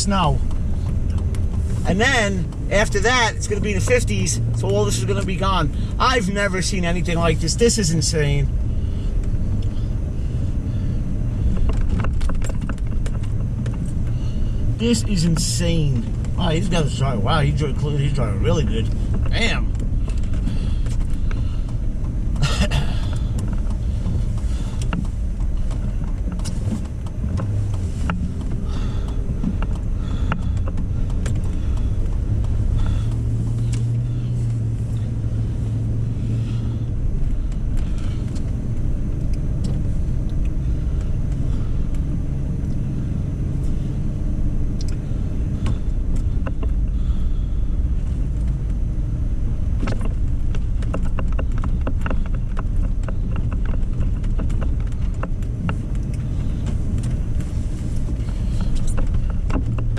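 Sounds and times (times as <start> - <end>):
steady engine hum: 0.0 - 59.9
vehicle engine and tyres rumbling: 0.0 - 59.9
light clicks and knocks: 18.8 - 36.6, 49.7 - 59.9.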